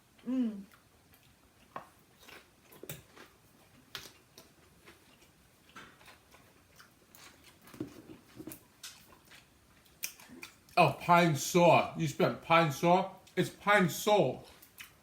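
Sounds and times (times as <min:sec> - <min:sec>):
chewing: 0:00.2 - 0:10.8, 0:14.4 - 0:15.0.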